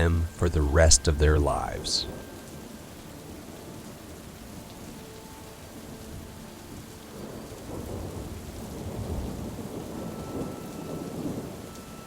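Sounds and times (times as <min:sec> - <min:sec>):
steady rain: 0:00.0 - 0:12.0
low rumble of thunder: 0:07.2 - 0:12.0.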